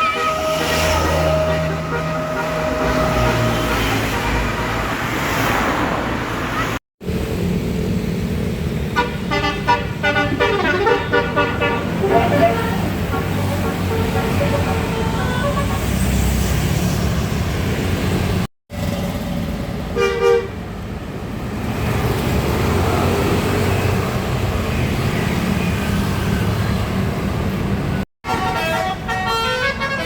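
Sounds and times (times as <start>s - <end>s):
bus horn playing a tune: 0.0s - 5.2s, 8.9s - 16.3s, 20.0s - 20.6s, 28.2s - 30.0s
bus engines running: 0.0s - 30.0s
road traffic: 0.0s - 30.0s
two-note horn toot: 9.3s - 16.0s.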